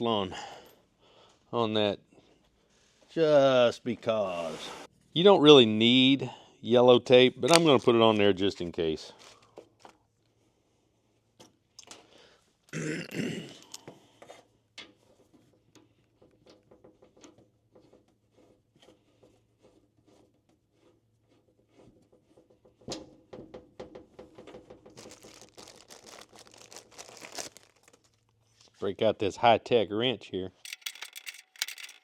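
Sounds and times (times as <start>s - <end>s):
thread tape crinkling and rubbing: 24.8s - 28.7s.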